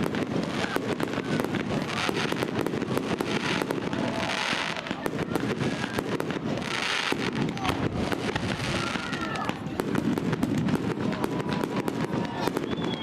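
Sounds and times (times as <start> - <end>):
fireworks bangs and crackles: 0.0 - 13.0.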